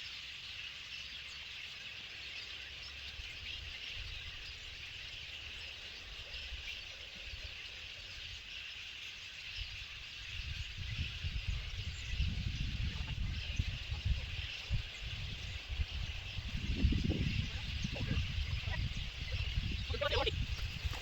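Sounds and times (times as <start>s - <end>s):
chorus of small calling creatures: 16.9s - 21.0s.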